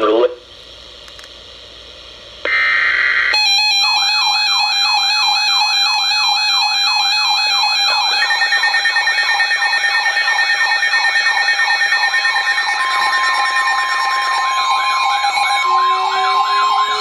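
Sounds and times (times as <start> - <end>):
faint radio hiss: 0.0 - 3.3
warbling alert tone: 3.4 - 17.0.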